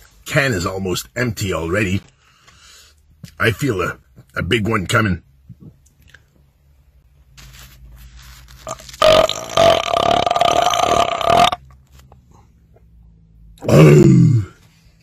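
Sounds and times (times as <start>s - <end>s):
man belching: 9.0s - 11.6s, 13.6s - 14.6s.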